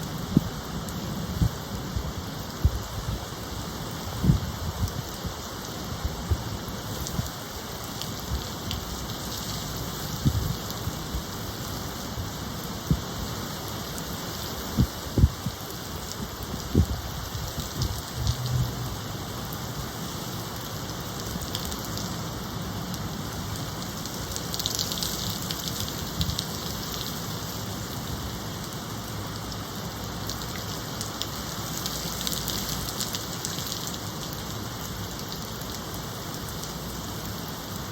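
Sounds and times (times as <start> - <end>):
steady rain falling: 0.0 - 37.9.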